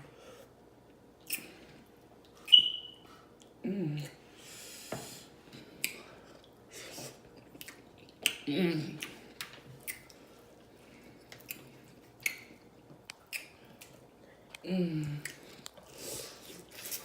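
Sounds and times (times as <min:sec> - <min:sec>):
person humming mm: 0:03.6 - 0:04.2, 0:14.6 - 0:15.4.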